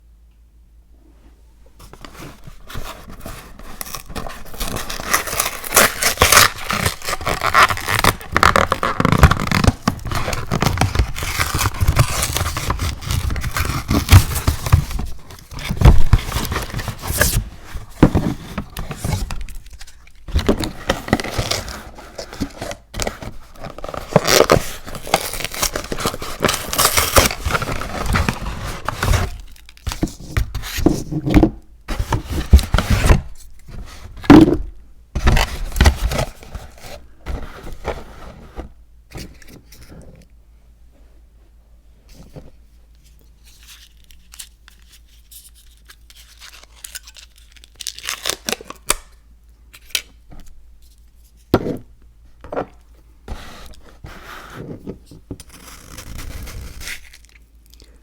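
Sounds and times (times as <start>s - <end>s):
scraping crinkling and tearing: 1.8s - 34.6s, 43.1s - 49.1s.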